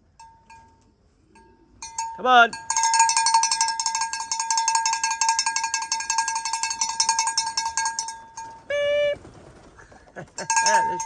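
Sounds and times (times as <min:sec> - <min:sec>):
bell ringing rapidly: 0:01.8 - 0:09.0, 0:10.3 - 0:11.0.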